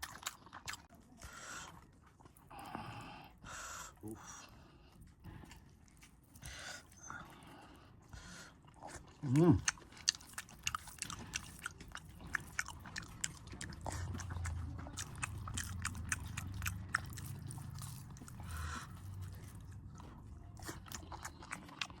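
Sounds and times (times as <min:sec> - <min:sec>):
person chewing: 0:00.0 - 0:02.8, 0:03.9 - 0:22.0.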